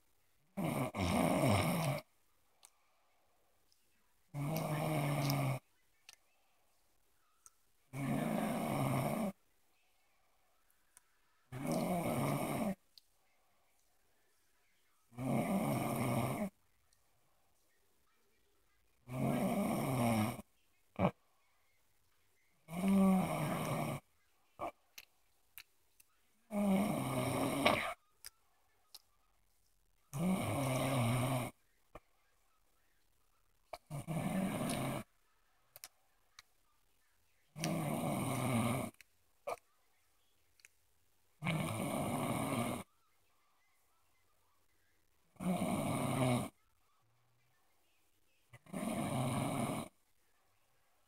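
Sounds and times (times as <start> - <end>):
quiet breathing: 0.0 - 51.0
loud rasping snores: 0.6 - 2.0, 4.4 - 5.6, 7.9 - 9.4, 11.6 - 12.8, 15.2 - 16.5, 19.1 - 20.4, 22.7 - 24.0, 26.5 - 28.0, 30.2 - 31.6, 33.9 - 35.1, 37.6 - 38.9, 41.4 - 42.9, 45.4 - 46.5, 48.6 - 49.9.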